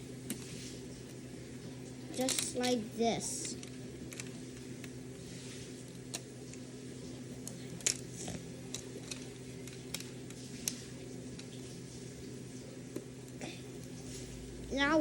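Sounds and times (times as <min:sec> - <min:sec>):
steady low hum: 0:00.0 - 0:15.0
plastic parts clicking together: 0:03.4 - 0:05.0, 0:07.4 - 0:10.8.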